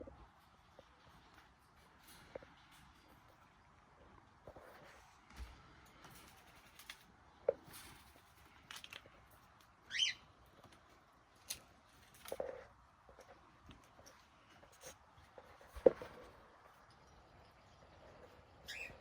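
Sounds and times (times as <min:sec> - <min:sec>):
faint clicks and rustles: 0:00.0 - 0:19.0
parrot chirp: 0:09.9 - 0:10.3, 0:18.6 - 0:19.0.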